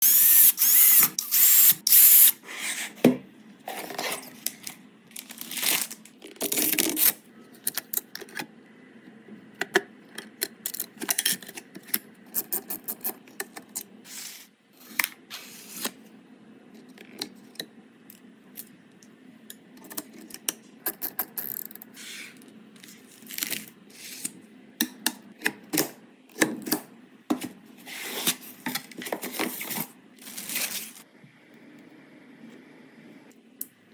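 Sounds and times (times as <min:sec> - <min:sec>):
rustling and scraping: 0:27.3 - 0:31.1.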